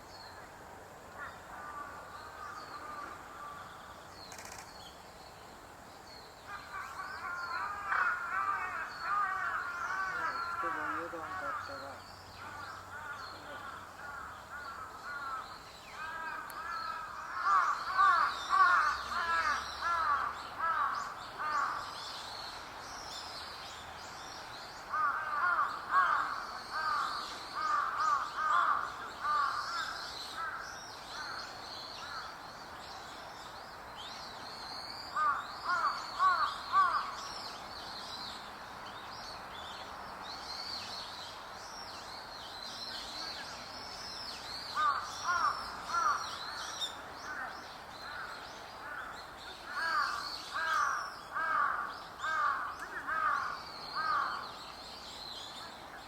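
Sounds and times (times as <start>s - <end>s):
bird repeated calls: 4.3s - 4.8s.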